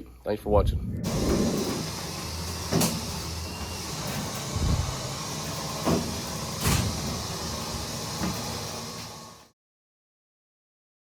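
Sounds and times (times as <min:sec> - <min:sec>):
vehicle rumble: 0:00.6 - 0:07.4.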